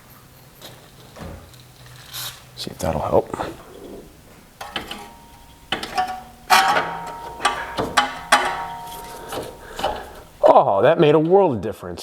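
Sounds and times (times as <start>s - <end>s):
ringing metallic knocks: 3.5s - 10.4s.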